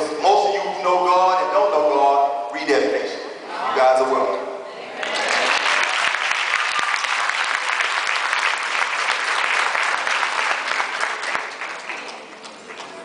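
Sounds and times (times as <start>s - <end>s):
audience applauding: 5.0s - 13.0s.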